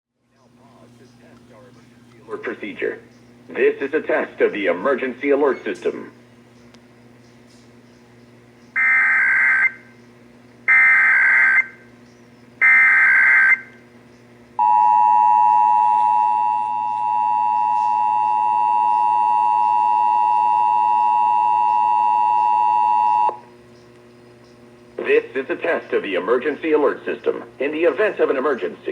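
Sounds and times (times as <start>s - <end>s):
two-tone attention signal: 14.6s - 23.4s.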